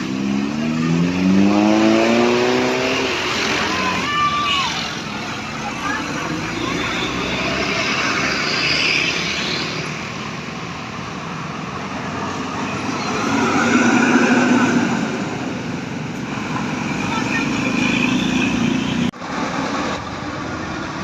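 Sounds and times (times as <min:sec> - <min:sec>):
large vehicle passing: 0:04.8 - 0:21.0.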